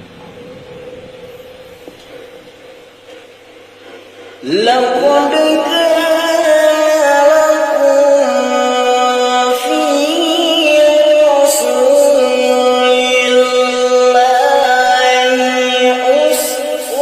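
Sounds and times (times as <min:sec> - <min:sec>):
man chanting melodically: 0:04.4 - 0:17.0.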